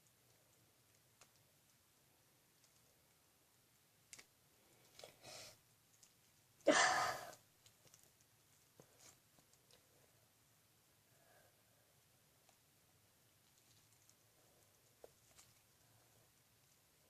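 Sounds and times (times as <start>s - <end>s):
person sighing: 6.7s - 7.4s
soft rustling: 7.3s - 17.0s.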